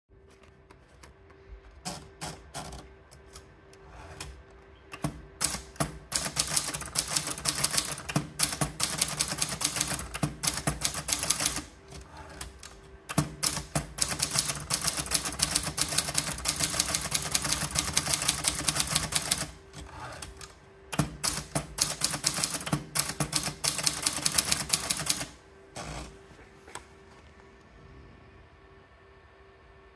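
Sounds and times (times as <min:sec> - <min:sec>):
manual typewriter keystrokes: 0:04.2 - 0:26.0.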